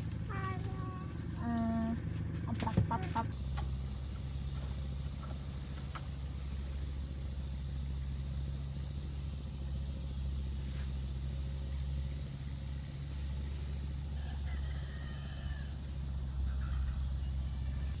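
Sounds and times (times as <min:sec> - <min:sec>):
constant low hum: 0:00.0 - 0:18.0
insects trilling: 0:00.0 - 0:18.0.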